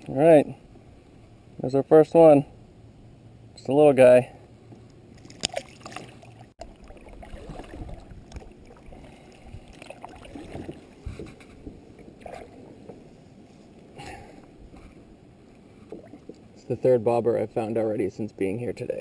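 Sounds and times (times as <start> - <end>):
light water sounds: 4.2 - 17.6
wind noise on microphone: 7.1 - 12.9.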